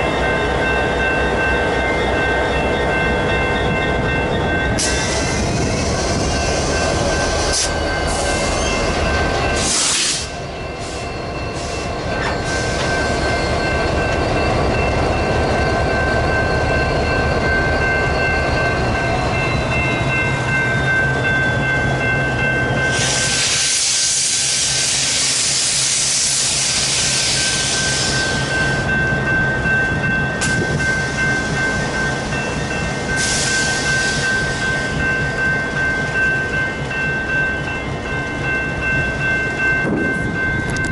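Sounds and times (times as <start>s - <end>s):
freight train rolling on rails: 0.0s - 40.9s
high-pitched metallic squealing: 1.1s - 29.3s.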